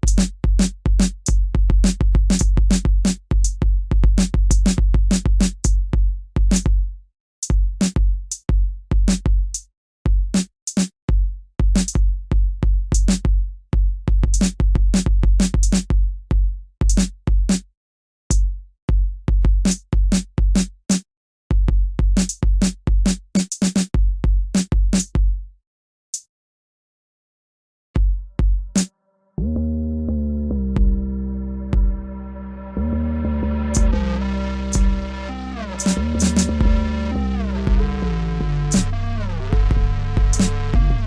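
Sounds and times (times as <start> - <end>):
deep bass kicks: 30.5 - 32.4, 33.3 - 35.3, 36.0 - 41.0
crisp hi-hat hits: 33.8 - 34.0.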